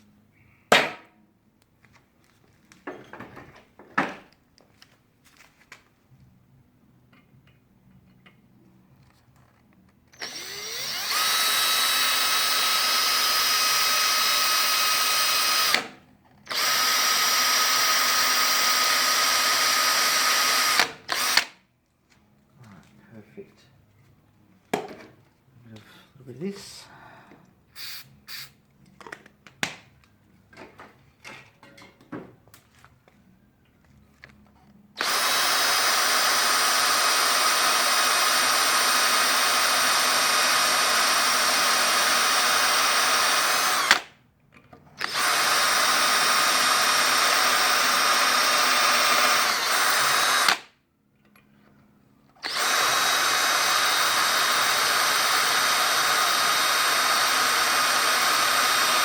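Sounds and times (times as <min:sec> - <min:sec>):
electric drill drilling: 0:10.1 - 0:21.6, 0:35.0 - 0:44.1, 0:45.0 - 0:50.7, 0:52.4 - 0:59.0.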